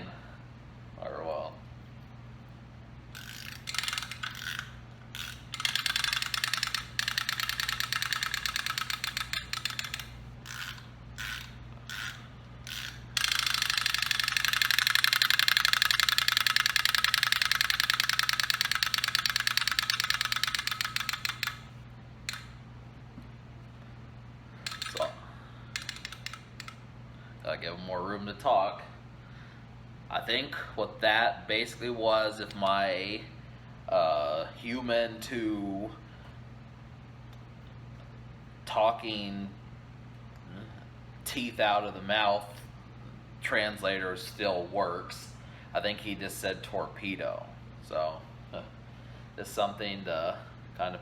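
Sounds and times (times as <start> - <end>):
wind-up chattering teeth clicking: 3.2 - 21.7, 24.7 - 25.1, 25.8 - 26.8.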